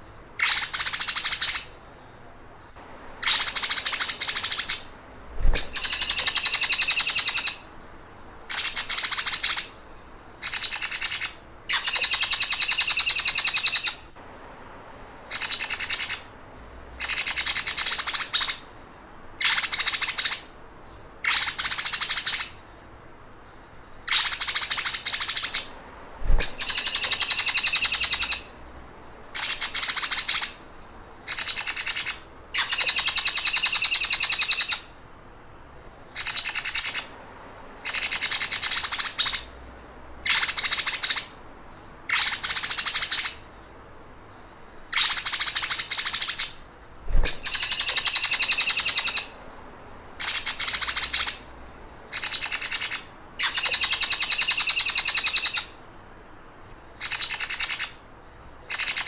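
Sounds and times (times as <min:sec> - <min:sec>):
songbird fast mechanical trill: 0:03.2 - 0:07.6.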